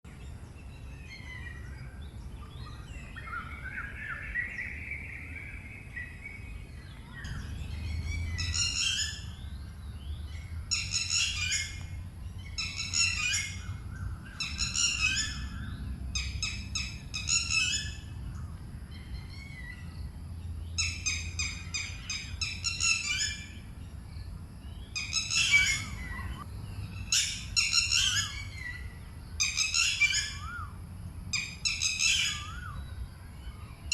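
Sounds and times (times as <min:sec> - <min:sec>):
shrill bird calls: 0:00.6 - 0:23.8, 0:24.6 - 0:33.9
lower wavering bird call: 0:07.1 - 0:09.7, 0:10.6 - 0:18.1, 0:24.9 - 0:30.8.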